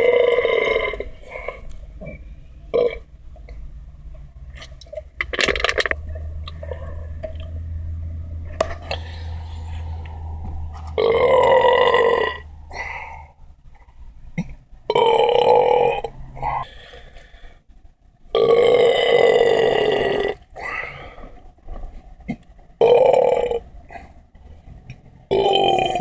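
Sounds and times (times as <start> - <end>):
man belching: 0.0 - 3.1, 10.9 - 13.0, 14.9 - 16.6, 18.4 - 20.7, 22.8 - 23.6, 25.3 - 26.0.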